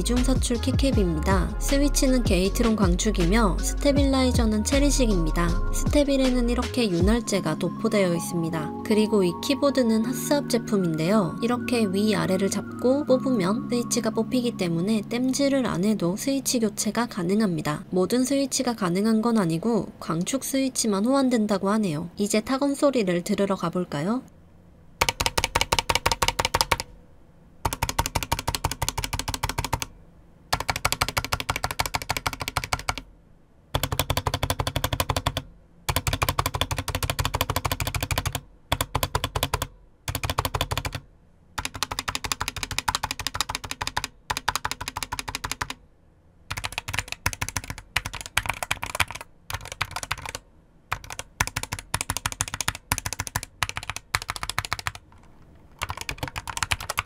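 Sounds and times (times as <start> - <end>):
mechanical keyboard typing: 25.0 - 26.9, 27.6 - 29.9, 30.5 - 33.1, 33.7 - 41.0, 41.6 - 45.8, 46.5 - 57.0.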